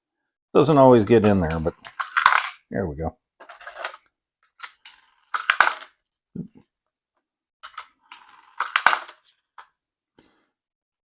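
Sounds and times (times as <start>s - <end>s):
coins clinking and clattering: 1.2s - 2.6s, 3.4s - 4.0s, 4.6s - 5.9s, 7.6s - 9.7s
toy robot clicks: 1.2s - 2.6s, 3.4s - 5.9s, 7.6s - 9.2s.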